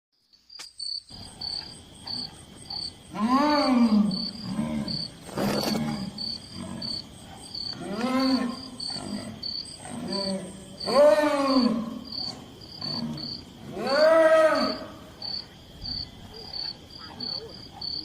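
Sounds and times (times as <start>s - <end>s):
insect chirps: 0.2s - 18.0s
animal moaning calls: 3.1s - 12.0s, 12.8s - 15.0s.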